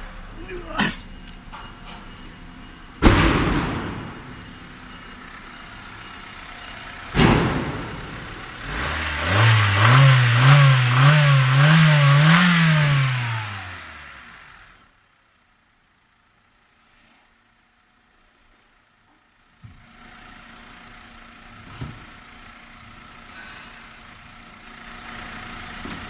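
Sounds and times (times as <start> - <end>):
car engine idling and revving: 0.0 - 26.0
engine knock: 1.1 - 14.9.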